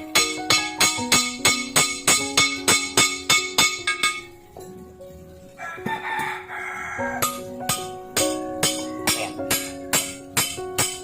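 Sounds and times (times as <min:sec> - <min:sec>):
music with struck ringing notes: 0:00.0 - 0:11.0.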